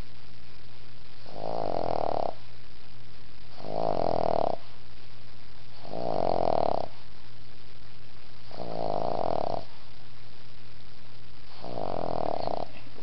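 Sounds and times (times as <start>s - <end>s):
dog snoring: 1.2s - 2.5s, 3.5s - 4.8s, 5.7s - 7.0s, 8.4s - 9.9s, 11.5s - 13.0s.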